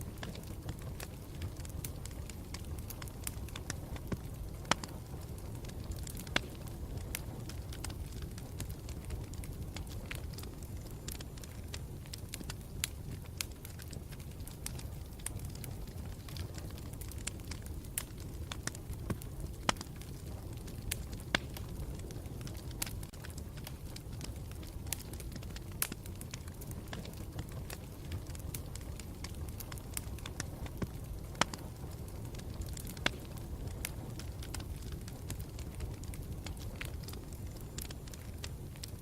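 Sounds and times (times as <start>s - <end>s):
campfire crackling: 0.0s - 39.0s.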